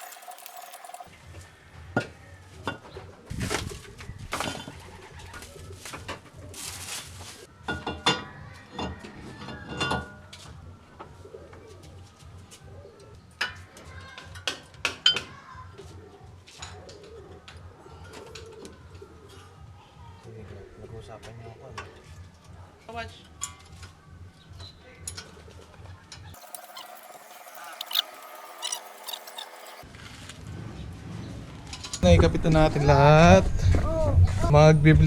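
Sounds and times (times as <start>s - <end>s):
pigeon cooing: 3.1s - 7.3s, 8.6s - 13.4s, 15.7s - 20.2s.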